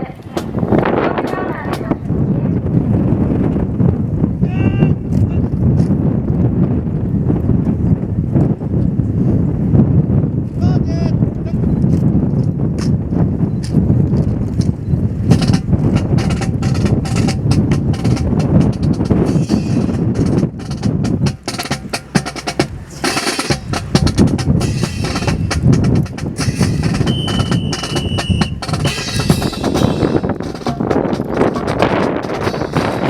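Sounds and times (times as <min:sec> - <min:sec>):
drill rifles clacking and slapping: 0:15.3 - 0:33.0.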